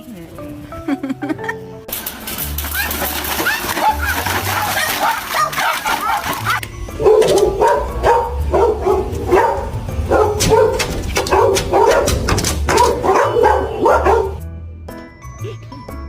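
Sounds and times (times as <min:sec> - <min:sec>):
dog barking and yapping: 0:02.6 - 0:14.4.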